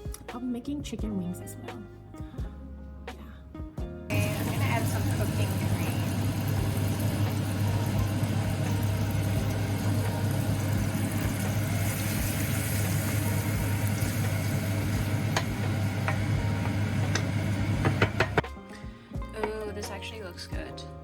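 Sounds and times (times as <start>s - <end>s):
low mechanical hum: 4.1s - 18.4s.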